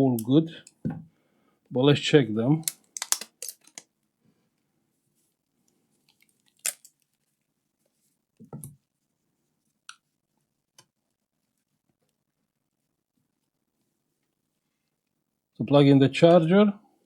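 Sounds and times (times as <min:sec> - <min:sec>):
plastic battery pack clicks: 0:02.6 - 0:03.8.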